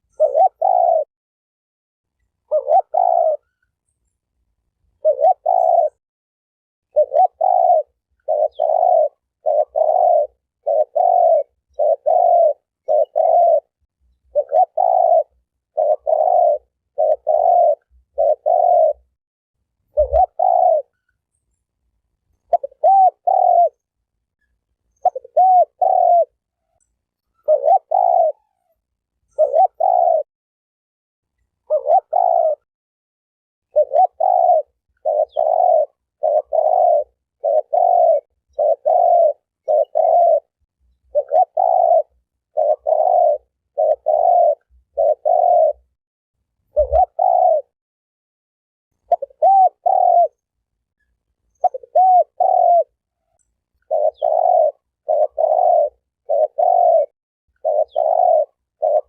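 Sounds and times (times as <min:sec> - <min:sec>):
dove cooing: 0:00.0 - 0:01.1, 0:02.4 - 0:03.6, 0:05.0 - 0:06.0, 0:06.9 - 0:19.2, 0:19.9 - 0:21.1, 0:22.4 - 0:23.9, 0:24.9 - 0:30.3, 0:31.6 - 0:32.7, 0:33.7 - 0:45.9, 0:46.7 - 0:47.8, 0:49.0 - 0:50.5, 0:51.5 - 0:59.0.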